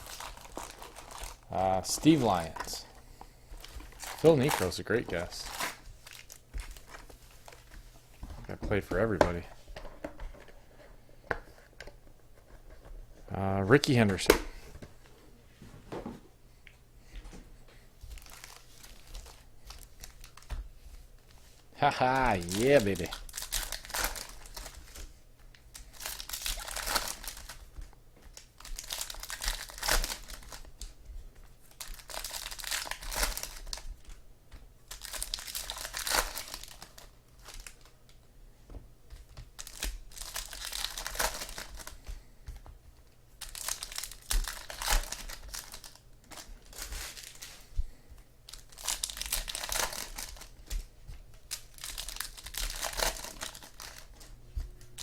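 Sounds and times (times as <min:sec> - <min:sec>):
wrappers torn and crinkled: 0:00.0 - 0:02.9, 0:03.6 - 0:07.6, 0:18.2 - 0:20.5, 0:22.0 - 0:27.6, 0:28.3 - 0:31.0, 0:31.7 - 0:33.9, 0:34.9 - 0:37.9, 0:39.4 - 0:41.9, 0:43.4 - 0:47.6, 0:48.5 - 0:54.3.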